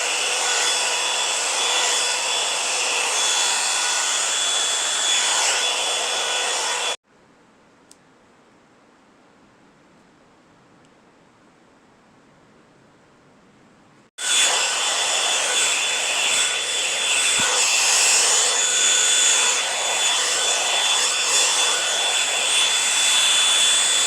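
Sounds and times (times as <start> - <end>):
hot air brush running: 0.0 - 7.0, 14.2 - 24.0.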